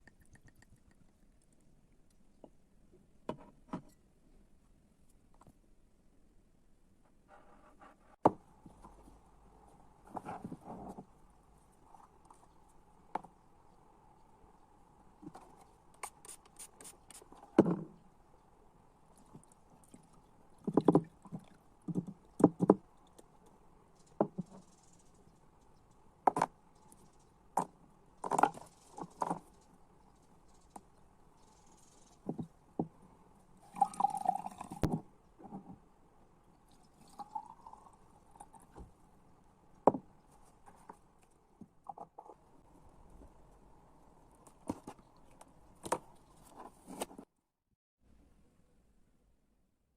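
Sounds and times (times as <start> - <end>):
jar taps and knocks: 20.7 - 22.8.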